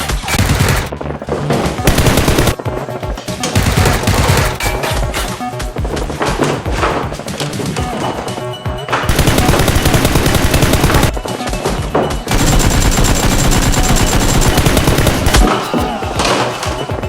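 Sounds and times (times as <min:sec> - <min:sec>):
rapid automatic gunfire: 0:00.0 - 0:00.9, 0:01.8 - 0:02.6, 0:03.5 - 0:04.6, 0:09.1 - 0:11.2, 0:12.3 - 0:15.4
background music: 0:00.0 - 0:17.0.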